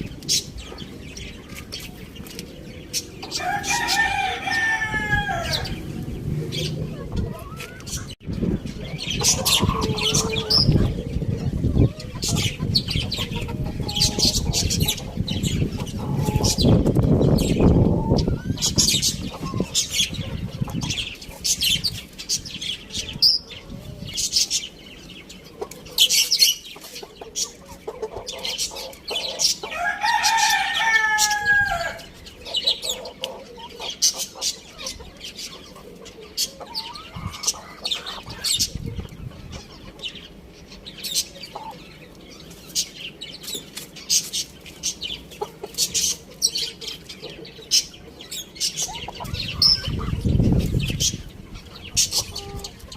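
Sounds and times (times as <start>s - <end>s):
hens clucking: 0.0s - 8.2s, 8.8s - 22.3s, 25.2s - 52.9s
rooster crowing: 3.4s - 5.9s, 29.7s - 32.1s.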